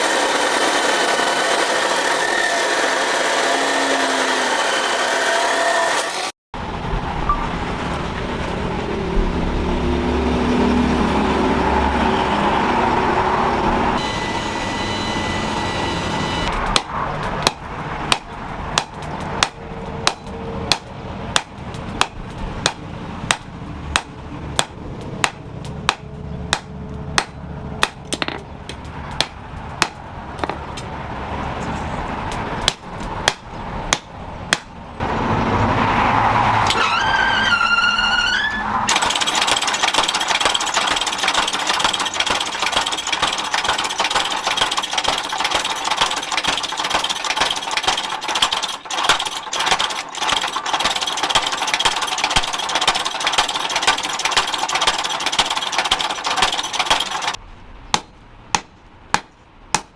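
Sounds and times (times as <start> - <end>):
hammer striking metal: 14.0 - 30.8, 38.9 - 59.9.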